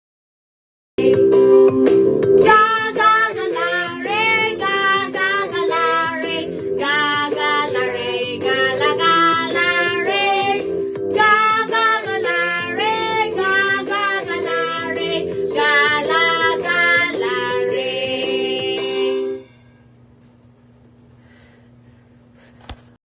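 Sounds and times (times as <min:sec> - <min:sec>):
steady musical accompaniment: 0:01.0 - 0:20.0
high singing voice: 0:02.4 - 0:19.7.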